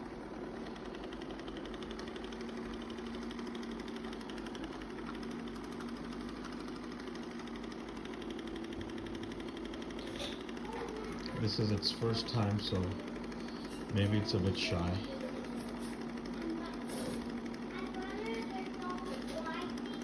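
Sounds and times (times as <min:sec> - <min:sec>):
robot vacuum motor hum: 0:00.0 - 0:20.0.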